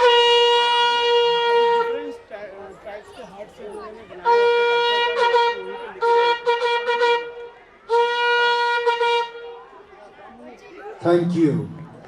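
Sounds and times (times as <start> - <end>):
horn blasts: 0.0 - 2.2, 4.2 - 9.7.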